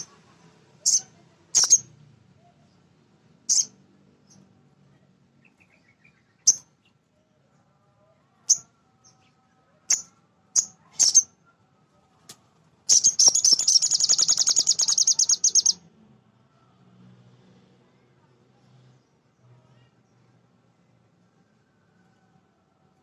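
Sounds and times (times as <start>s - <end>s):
bird chattering trill: 1.6s - 1.8s, 9.9s - 11.2s, 12.9s - 15.8s
bird singing sharp high chirps: 1.6s - 1.8s, 3.5s - 3.7s, 9.9s - 11.3s, 12.9s - 15.8s.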